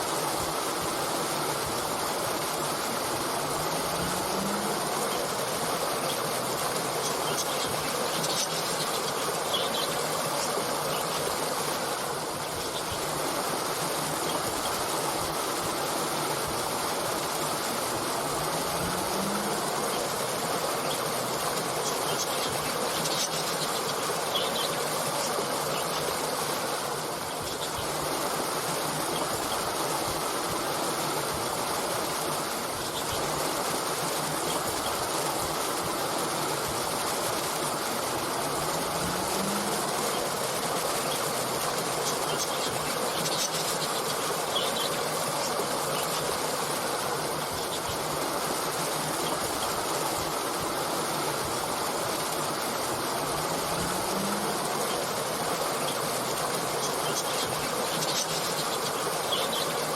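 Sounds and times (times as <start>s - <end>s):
stream rushing: 0.0s - 59.9s
faint high bird chirps: 40.9s - 46.3s, 56.7s - 59.8s.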